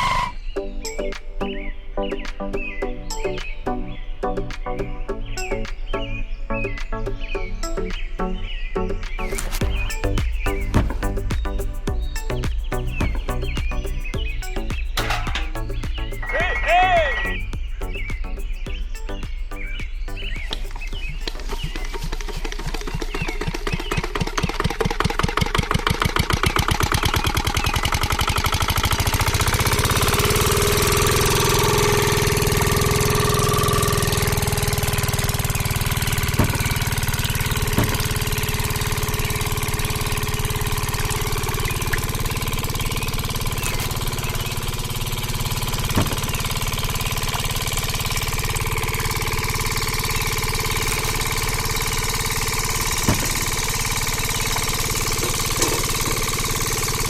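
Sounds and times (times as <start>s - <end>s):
small engine running: 0.0s - 0.5s, 9.3s - 57.0s
sharp clicks or knocks: 9.3s - 16.2s.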